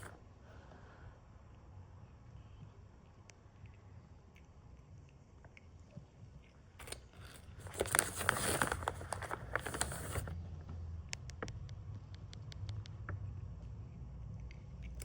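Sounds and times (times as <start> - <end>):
snack wrapper crinkling: 6.8 - 10.3.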